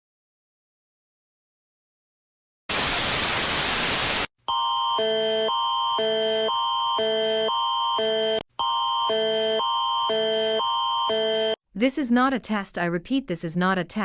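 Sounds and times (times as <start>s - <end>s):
white-noise static burst: 2.7s - 4.3s
emergency alert tone: 4.5s - 11.6s.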